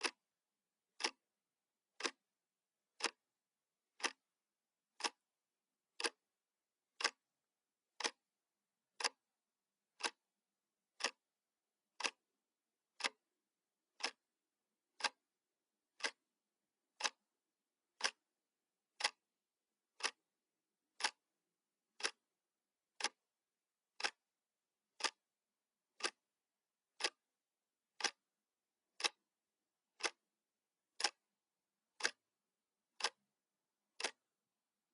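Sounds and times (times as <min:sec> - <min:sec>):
clock ticking: 0:00.0 - 0:00.2, 0:00.9 - 0:01.2, 0:01.9 - 0:02.2, 0:02.9 - 0:03.2, 0:03.9 - 0:04.3, 0:04.9 - 0:05.2, 0:05.9 - 0:06.3, 0:06.9 - 0:07.2, 0:07.9 - 0:08.3, 0:08.9 - 0:09.3, 0:09.9 - 0:10.3, 0:10.9 - 0:11.3, 0:11.9 - 0:12.3, 0:12.9 - 0:13.3, 0:13.9 - 0:14.3, 0:14.9 - 0:15.3, 0:15.9 - 0:16.3, 0:16.9 - 0:17.3, 0:17.9 - 0:18.3, 0:18.9 - 0:19.3, 0:19.9 - 0:20.3, 0:20.9 - 0:23.3, 0:23.9 - 0:24.3, 0:24.9 - 0:26.3, 0:26.9 - 0:27.3, 0:28.0 - 0:29.3, 0:29.9 - 0:30.3, 0:30.9 - 0:31.3, 0:31.9 - 0:34.4.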